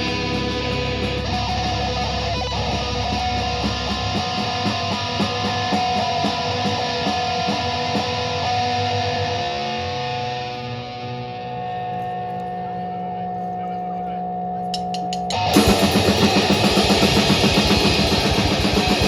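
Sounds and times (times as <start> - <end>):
deep bass: 0.0 - 10.0
live rock band: 0.0 - 12.6, 15.2 - 19.0
electric guitar: 0.0 - 19.0.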